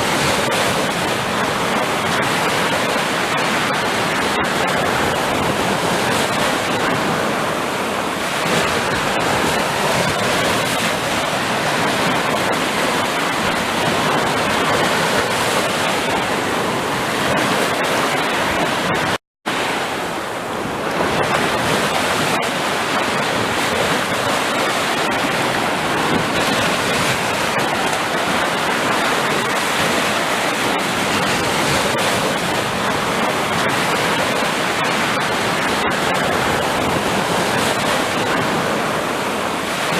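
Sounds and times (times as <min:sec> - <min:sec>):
sea surf washing on shore: 0:00.0 - 0:39.9.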